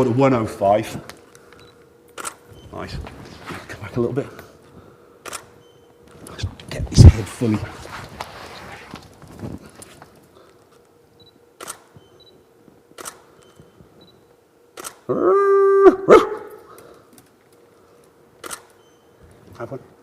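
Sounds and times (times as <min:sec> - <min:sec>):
camera shutter firing: 0:02.2 - 0:02.4, 0:05.2 - 0:05.5, 0:11.6 - 0:12.0, 0:13.0 - 0:13.3, 0:14.8 - 0:15.1, 0:18.4 - 0:18.8.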